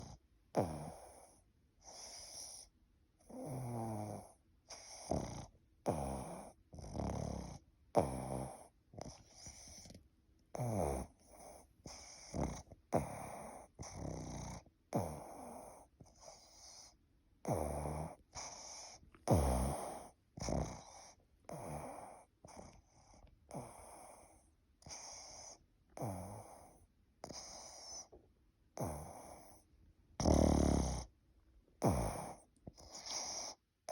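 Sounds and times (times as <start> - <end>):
quiet breaths: 0.0 - 33.9
person snoring: 17.4 - 22.2, 30.2 - 31.1, 31.8 - 33.6.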